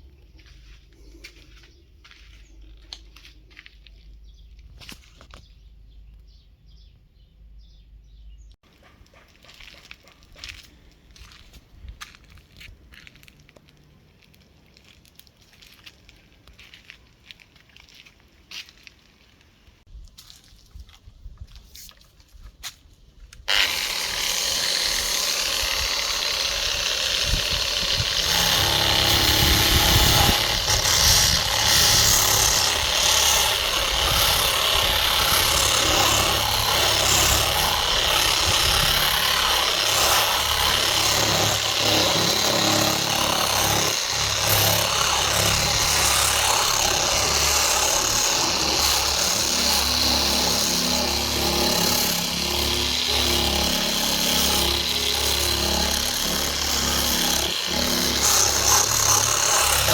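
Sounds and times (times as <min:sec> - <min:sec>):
electric power tool running: 0:23.5 - 0:59.9.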